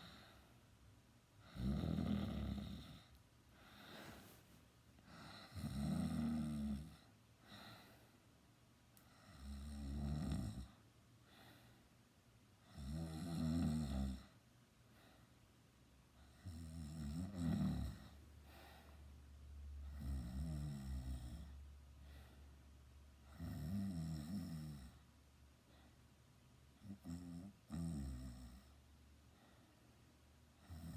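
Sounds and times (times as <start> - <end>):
quiet breathing: 0.0 - 30.9
person snoring loudly: 1.4 - 3.0, 5.2 - 7.0, 9.3 - 10.7, 12.8 - 14.3, 16.4 - 18.2, 19.9 - 21.5, 23.3 - 25.0.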